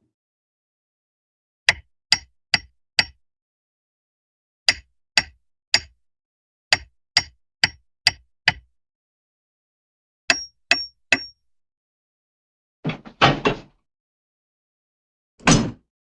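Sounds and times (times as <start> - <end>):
cartoon knocks with metallic ring: 10.3 - 11.4.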